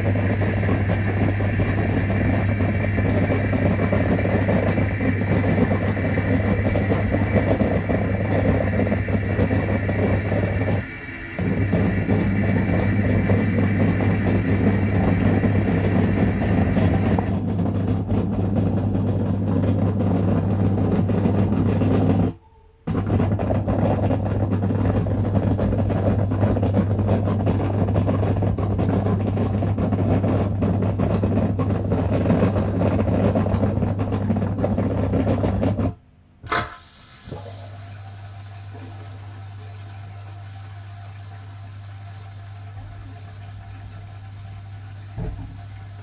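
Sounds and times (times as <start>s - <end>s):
water spraying and splashing: 0.0s - 17.4s, 36.5s - 46.0s
dishwasher pump hum: 0.0s - 46.0s.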